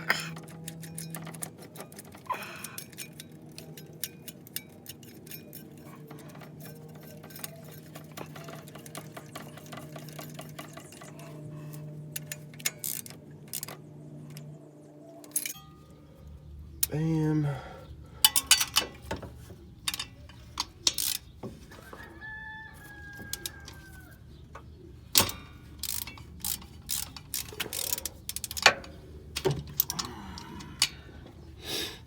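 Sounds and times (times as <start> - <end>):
hand ratchet clicking: 0.0 - 11.4, 18.2 - 19.1, 19.8 - 21.9, 23.1 - 24.0, 25.1 - 31.0
steady low hum: 0.0 - 22.2, 23.0 - 32.0.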